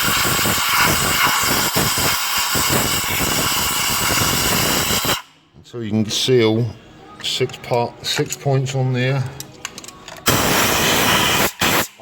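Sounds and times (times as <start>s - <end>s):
compressed air blasting: 0.0s - 5.3s, 10.3s - 12.0s.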